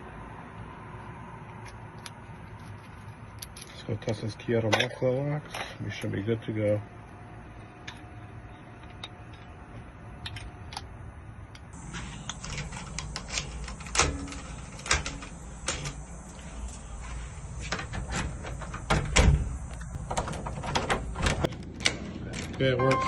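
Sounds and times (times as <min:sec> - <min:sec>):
handling noise: 0:11.8 - 0:23.0.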